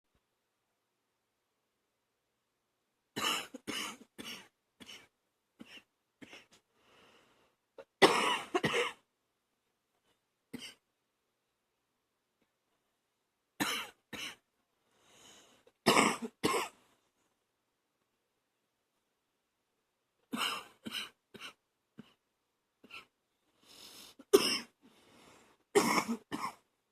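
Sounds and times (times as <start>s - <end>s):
woman coughing: 3.2s - 6.5s, 8.0s - 9.0s, 13.6s - 14.4s, 15.9s - 16.8s, 20.3s - 22.2s, 24.3s - 24.7s, 25.8s - 26.6s.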